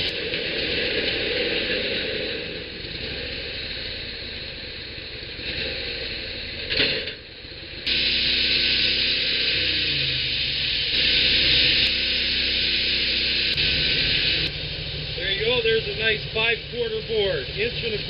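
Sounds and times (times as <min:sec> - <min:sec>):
sawmill engine and blade humming: 0:07.4 - 0:18.0.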